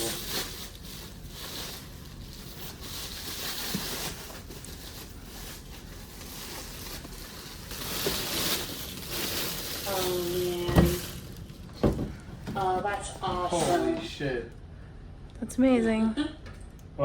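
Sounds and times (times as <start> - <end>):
packaging rustling: 0.0 - 12.6.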